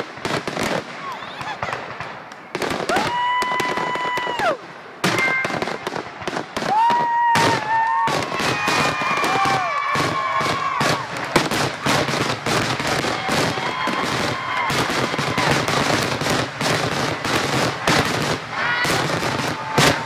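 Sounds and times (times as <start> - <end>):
fireworks bangs and crackling: 0.0 - 20.0
firework whistling tones: 1.0 - 1.8, 2.9 - 18.0.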